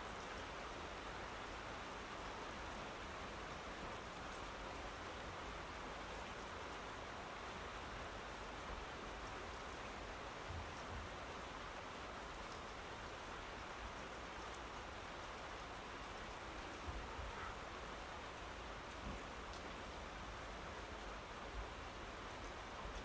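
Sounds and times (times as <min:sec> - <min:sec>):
steady rain falling: 0:00.0 - 0:23.0.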